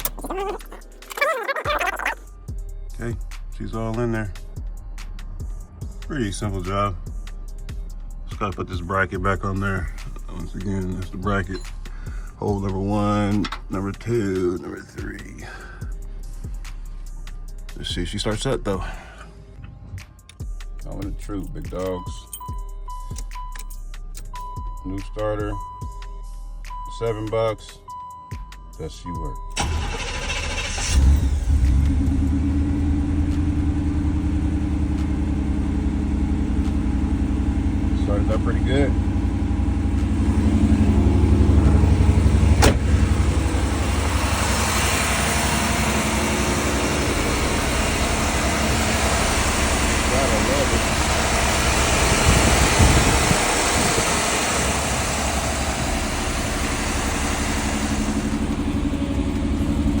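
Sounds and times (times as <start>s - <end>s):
car engine idling: 29.6s - 60.0s.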